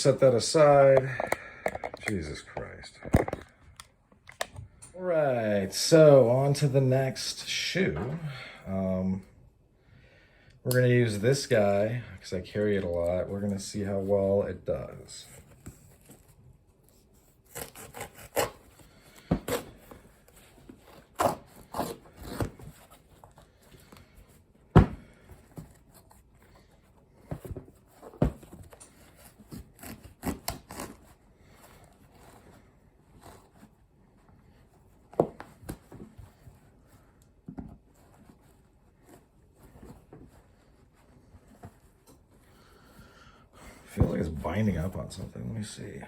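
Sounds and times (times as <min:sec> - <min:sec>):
knife cutting into shoe: 0:17.4 - 0:18.7.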